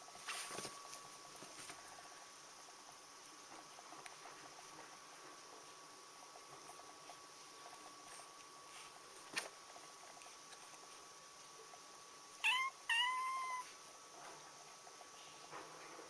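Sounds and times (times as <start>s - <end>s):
cat meowing: 12.4s - 13.7s.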